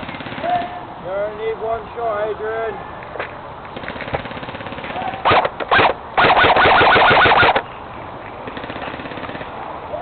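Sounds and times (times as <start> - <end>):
airsoft rifle firing bursts: 4.3 - 7.6.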